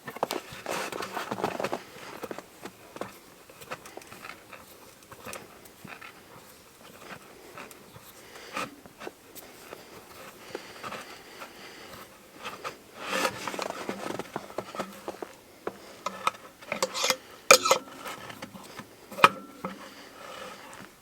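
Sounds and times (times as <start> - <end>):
hand tool clicks and knocks on wood: 13.3 - 19.9.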